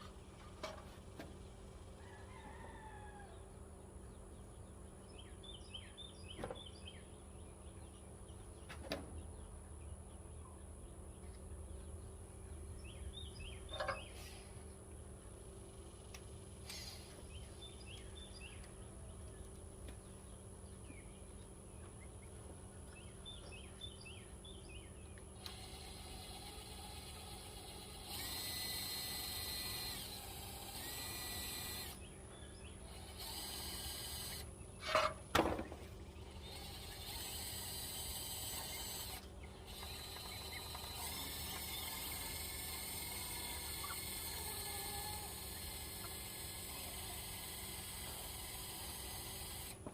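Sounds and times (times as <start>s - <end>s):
cordless drill driving screws into wood: 25.4s - 32.0s, 33.0s - 34.5s, 36.4s - 49.9s.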